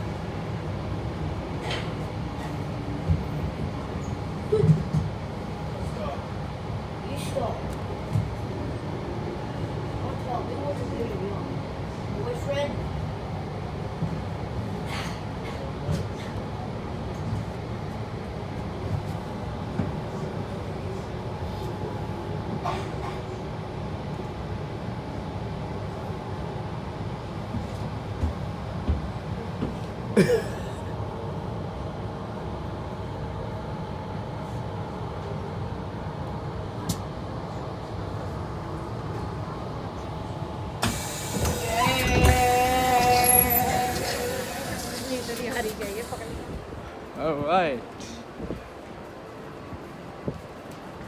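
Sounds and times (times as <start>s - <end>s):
train rumble and hiss: 0.0s - 51.0s.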